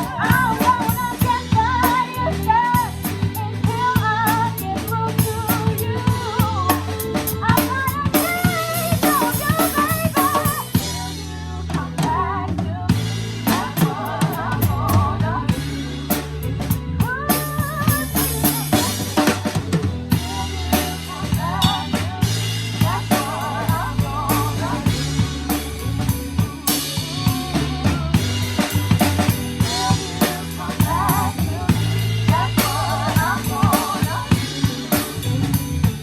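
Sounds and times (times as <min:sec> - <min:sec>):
bass notes: 0:00.0 - 0:36.0
drum kit beat: 0:00.0 - 0:36.0
live rock band playing: 0:00.0 - 0:36.0
wavering melodic lead line: 0:00.0 - 0:36.0.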